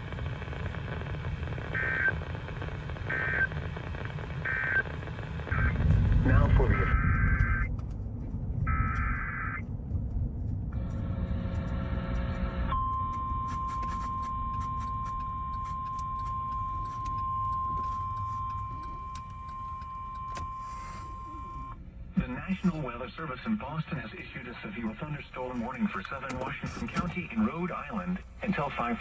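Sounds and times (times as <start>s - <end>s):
low rumble: 3.8s - 13.4s
steady warning alarm tone: 4.4s - 4.9s, 5.5s - 7.8s, 8.6s - 9.7s, 10.7s - 21.8s.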